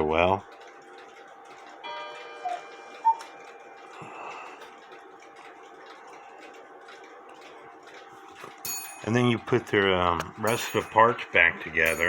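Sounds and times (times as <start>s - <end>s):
faint clock ticking: 0.0s - 12.0s
metal clockwork ringing: 1.7s - 4.0s, 8.5s - 12.0s.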